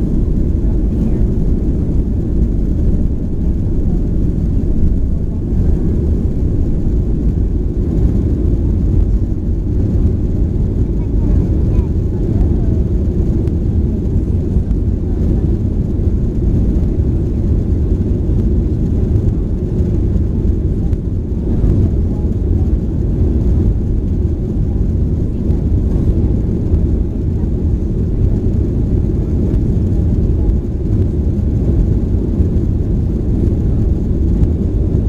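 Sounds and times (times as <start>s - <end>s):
airplane cabin engine rumble: 0.0s - 35.0s.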